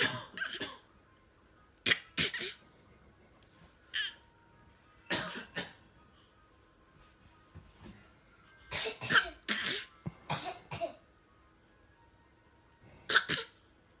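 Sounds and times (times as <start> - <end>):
man coughing: 0.0 - 0.8, 5.1 - 5.8, 8.7 - 11.0
baby coughing: 0.0 - 0.9, 1.8 - 2.6, 3.9 - 4.2, 5.1 - 5.8, 8.7 - 11.0, 13.1 - 13.6.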